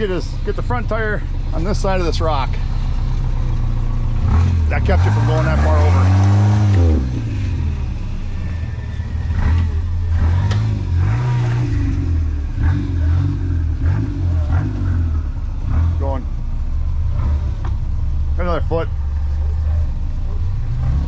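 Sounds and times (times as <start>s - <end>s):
engine revving in short blips: 3.1s - 16.3s.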